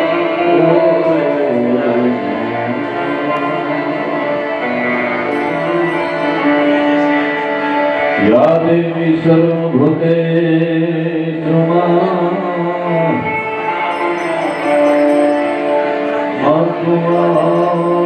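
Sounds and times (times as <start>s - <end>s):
sustained instrument tones: 0.0s - 18.0s
person singing devotional song: 16.3s - 18.0s.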